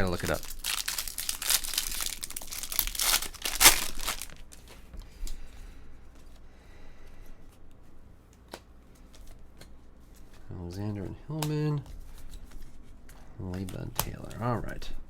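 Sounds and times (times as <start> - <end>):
wrapper tearing and crinkling: 0.0 - 4.8.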